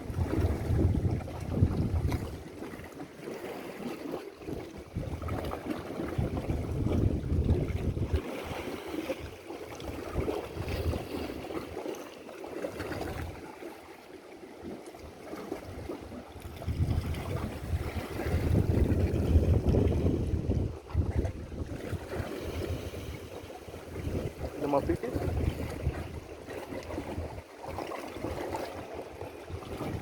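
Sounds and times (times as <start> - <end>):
wind buffeting microphone: 0.0 - 2.6, 4.7 - 11.5, 15.6 - 27.4, 28.0 - 30.0
sea water washing: 0.0 - 30.0.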